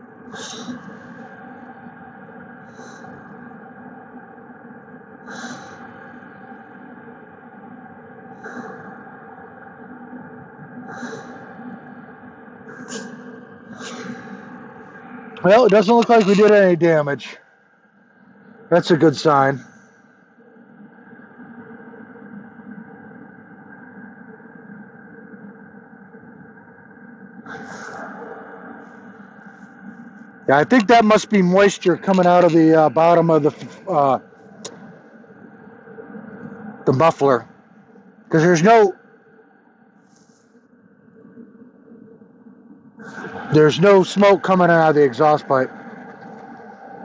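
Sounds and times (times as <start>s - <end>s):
heater humming: 9.8s - 17.4s, 18.4s - 20.0s, 27.4s - 39.0s, 43.0s - 47.0s
air heater humming: 12.7s - 17.4s, 30.5s - 35.0s.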